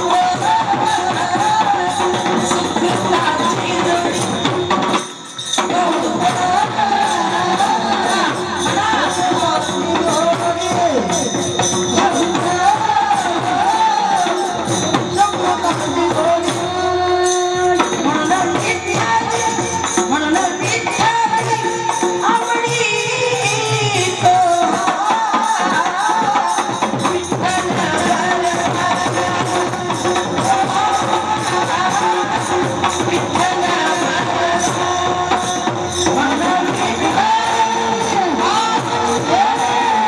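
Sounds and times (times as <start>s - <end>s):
jingling hand percussion: 0.0s - 40.0s
woman singing: 0.0s - 40.0s.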